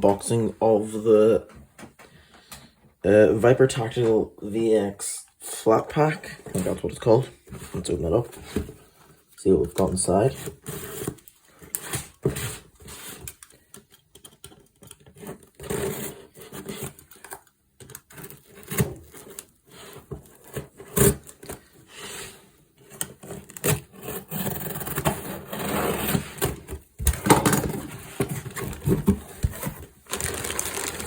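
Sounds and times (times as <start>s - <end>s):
cardboard scraping and rubbing: 10.2s - 13.3s, 18.1s - 31.0s.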